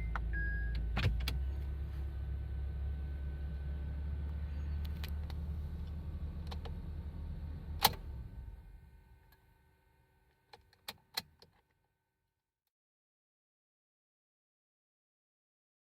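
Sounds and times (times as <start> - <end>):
car engine idling: 0.0 - 9.2.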